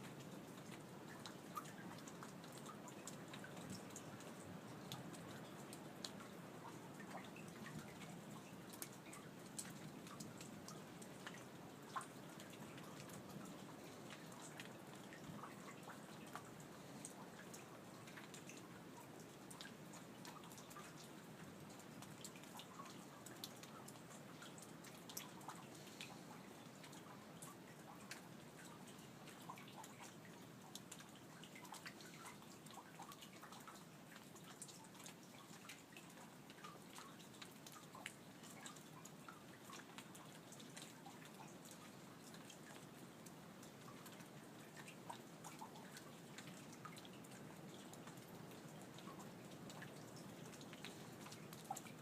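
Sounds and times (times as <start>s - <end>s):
rain dripping: 0.0s - 52.0s
soft steady hush: 0.0s - 52.0s.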